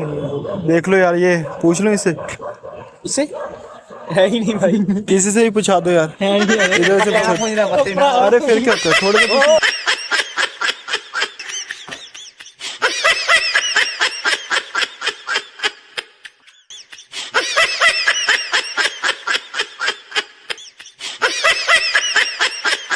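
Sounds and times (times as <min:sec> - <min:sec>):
high-pitched laughter: 0:06.3 - 0:22.9.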